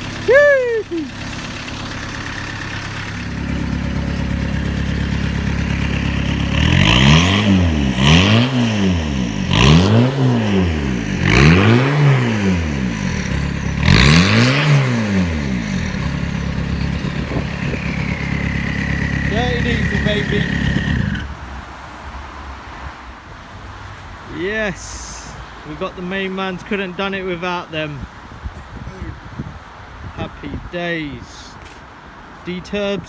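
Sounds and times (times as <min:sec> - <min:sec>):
diesel engine idling and revving: 0:00.0 - 0:22.0.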